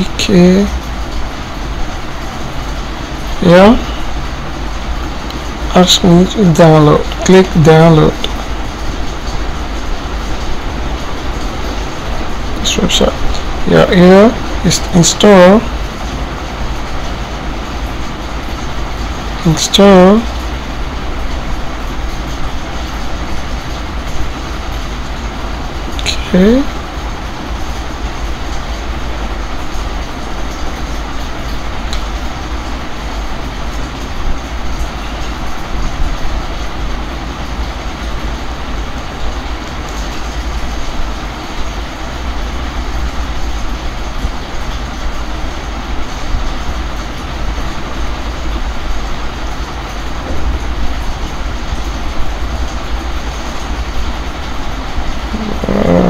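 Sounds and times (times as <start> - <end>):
steady rumbling background noise: 0.0 - 56.0
strong low hum: 50.0 - 56.0.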